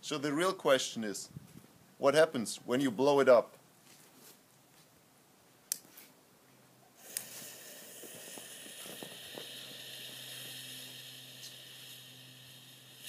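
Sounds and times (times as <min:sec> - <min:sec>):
firecracker fuse hissing: 0:07.0 - 0:13.0.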